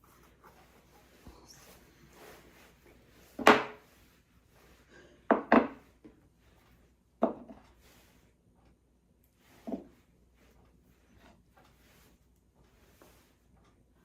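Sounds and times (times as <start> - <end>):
kitchen items knocking and clattering: 5.2 - 5.9.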